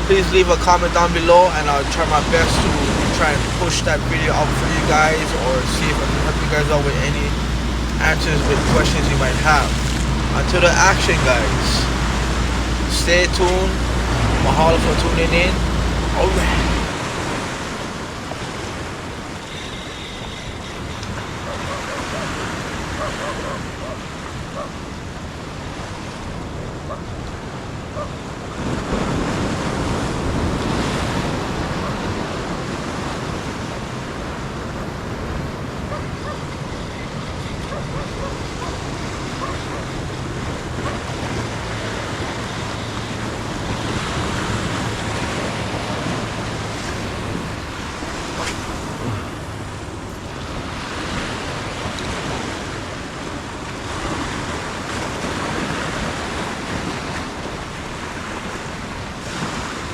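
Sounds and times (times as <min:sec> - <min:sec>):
ocean waves breaking: 0:00.0 - 0:59.9
wind: 0:00.0 - 0:59.9.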